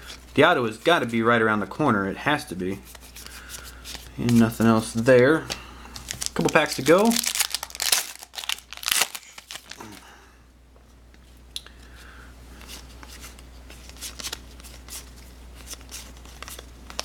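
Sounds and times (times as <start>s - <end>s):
cards rustling: 2.7s - 10.0s, 12.6s - 17.0s
foil pack crinkling and tearing: 6.0s - 10.1s.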